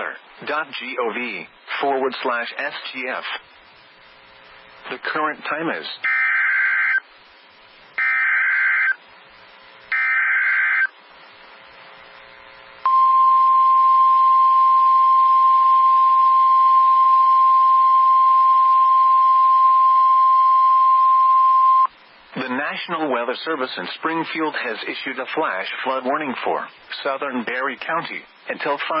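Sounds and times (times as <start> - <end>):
harsh digital data bursts: 6.0 - 7.0, 8.0 - 9.0, 9.9 - 10.9
steady alarm tone: 6.0 - 7.0, 8.0 - 9.0, 9.9 - 11.0.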